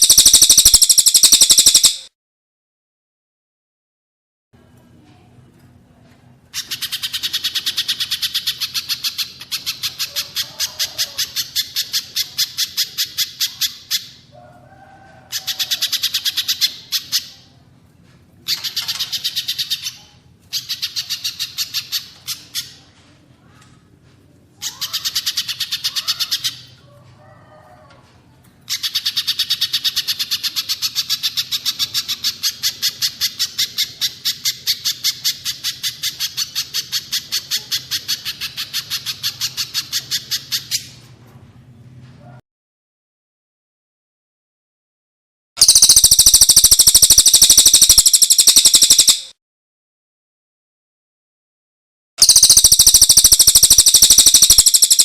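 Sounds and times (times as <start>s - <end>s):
songbird calls: 0.0s - 2.1s, 45.6s - 49.3s, 52.2s - 55.0s.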